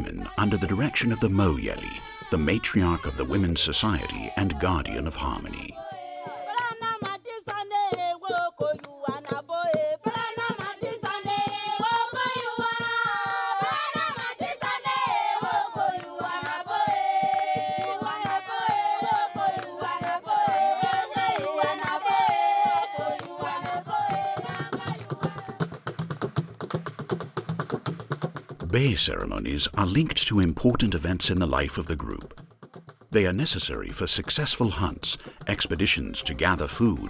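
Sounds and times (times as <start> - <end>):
women singing yodeled polyphony: 0.0 - 25.6
hand claps: 5.8 - 28.9.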